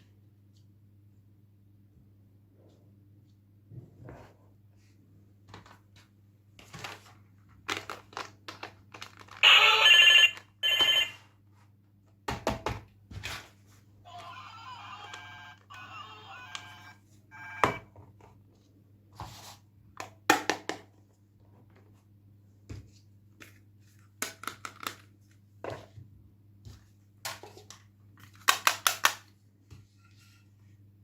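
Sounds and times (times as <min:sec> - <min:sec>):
electronic ringtone: 0:09.4 - 0:11.2, 0:14.4 - 0:17.8.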